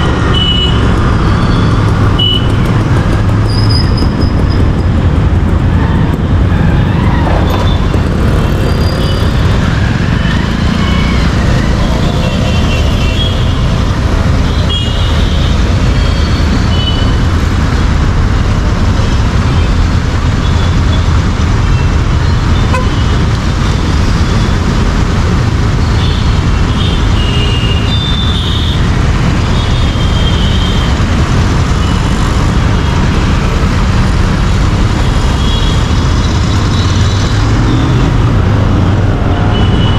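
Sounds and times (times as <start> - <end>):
traffic noise: 0.0 - 39.9
motorcycle engine running: 0.2 - 11.0.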